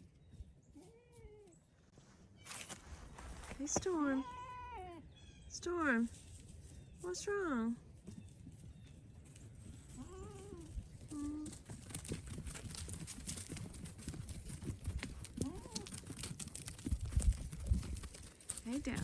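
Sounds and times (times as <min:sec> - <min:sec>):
crunching and rustling: 0:01.9 - 0:04.0
goat bleating: 0:04.2 - 0:05.1.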